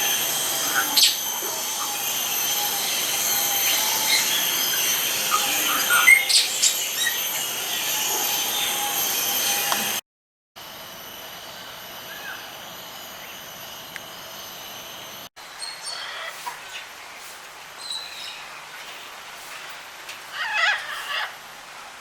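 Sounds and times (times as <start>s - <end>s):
birds chirping: 0.0s - 10.0s
high-pitched drone: 0.0s - 10.0s, 10.6s - 15.3s.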